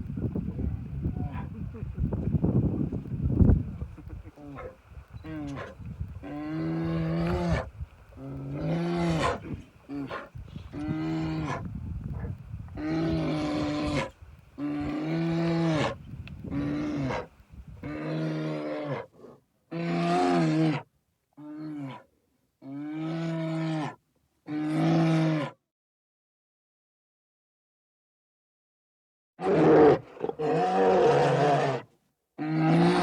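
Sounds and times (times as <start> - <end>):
large animal calling: 4.5 - 11.7, 12.8 - 19.1.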